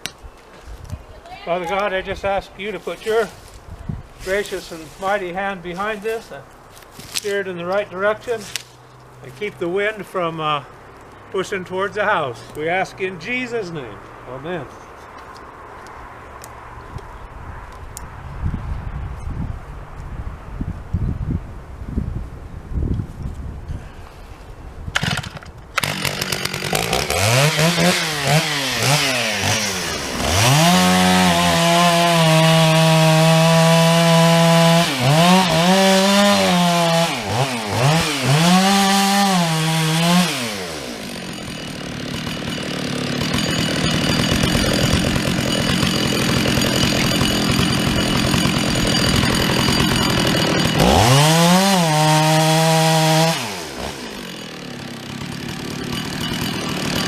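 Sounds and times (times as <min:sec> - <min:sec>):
chainsaw revving: 0:25.0 - 0:57.0.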